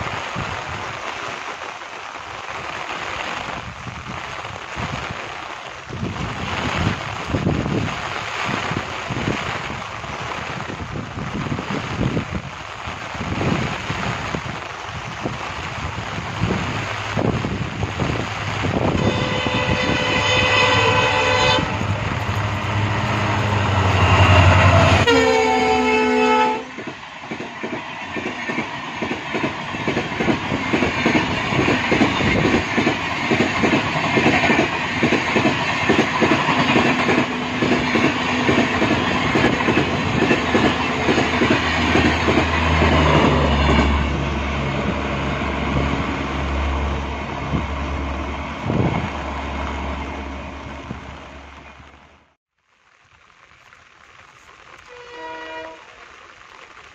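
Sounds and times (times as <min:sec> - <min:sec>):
heavy rain: 0:00.0 - 0:56.9
locomotive engine hum: 0:17.9 - 0:52.2
train horn: 0:18.8 - 0:26.8, 0:54.8 - 0:56.1
train wheels clickety-clack: 0:26.6 - 0:44.0.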